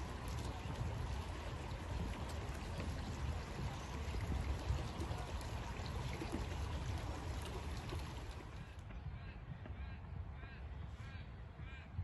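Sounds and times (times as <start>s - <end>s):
running water rushing: 0.0s - 8.6s.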